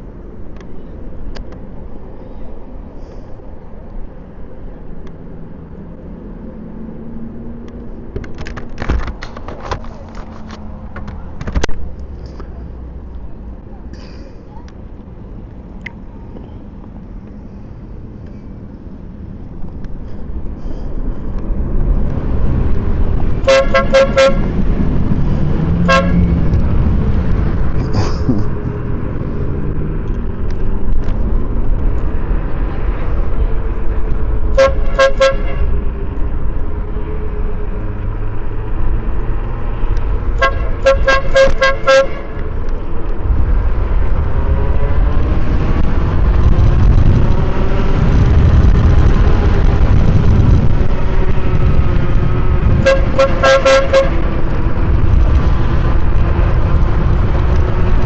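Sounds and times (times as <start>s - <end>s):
electric air horn toots: 23.4s - 24.5s, 25.8s - 26.3s, 34.5s - 35.7s, 40.4s - 42.4s, 52.8s - 54.2s
low rumble: 42.2s - 58.0s.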